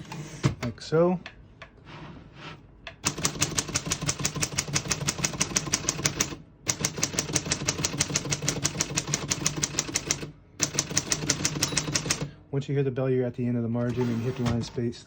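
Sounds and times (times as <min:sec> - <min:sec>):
typewriter keystrokes: 0:03.0 - 0:12.3.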